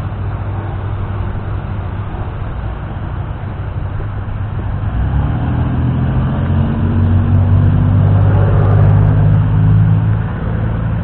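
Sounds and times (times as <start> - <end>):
vehicle engine hum: 0.0 - 11.0.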